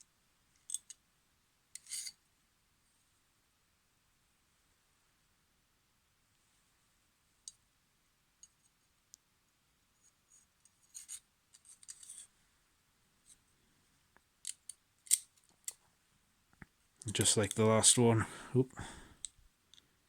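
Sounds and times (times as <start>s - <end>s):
pocket knife scraping: 1.8s - 2.2s.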